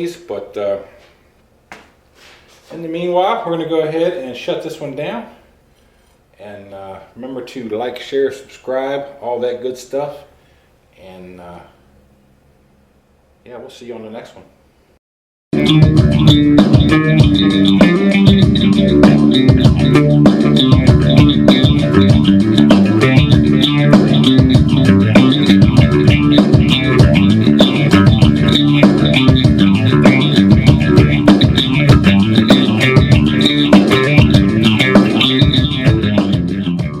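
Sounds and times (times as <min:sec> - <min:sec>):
rock music with bass and guitar: 0:15.6 - 0:37.0.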